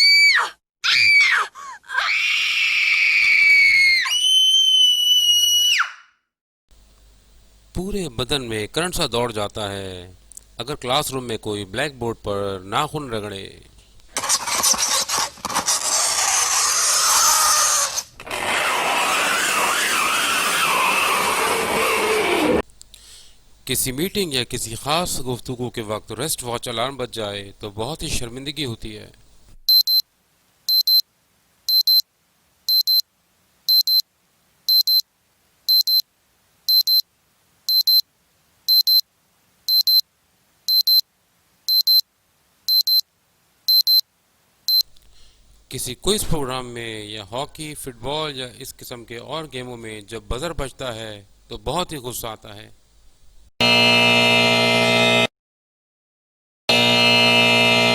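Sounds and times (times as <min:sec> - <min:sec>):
fingernails scraping chalkboard: 0:14.1 - 0:19.0
wristwatch alarm beeping: 0:29.7 - 0:30.0, 0:30.7 - 0:31.0, 0:31.7 - 0:32.0, 0:32.7 - 0:33.0, 0:33.7 - 0:34.0, 0:34.7 - 0:35.0, 0:35.7 - 0:36.0, 0:36.7 - 0:37.0, 0:37.7 - 0:38.0, 0:38.7 - 0:39.0, 0:39.7 - 0:40.0, 0:40.7 - 0:41.0, 0:41.7 - 0:42.0, 0:42.7 - 0:43.0, 0:43.7 - 0:44.0.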